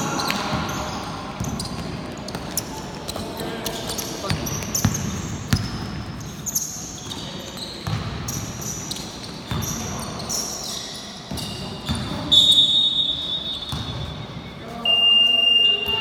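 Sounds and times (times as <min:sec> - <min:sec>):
sneakers squeaking: 0:00.0 - 0:16.0
basketball bouncing: 0:04.3 - 0:06.1, 0:07.8 - 0:08.4.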